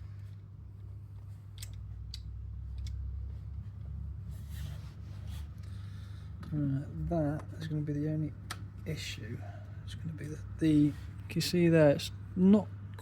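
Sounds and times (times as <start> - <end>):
low steady hum: 0.0 - 13.0
light clicks of small parts: 1.1 - 3.6.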